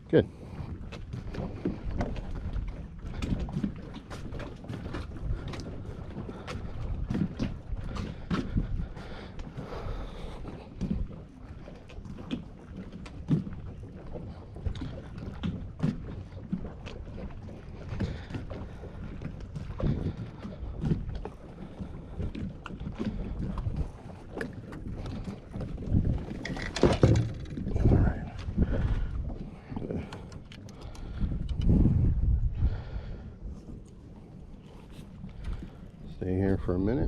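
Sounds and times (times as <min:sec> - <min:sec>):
wind buffeting microphone: 0:00.0 - 0:37.0.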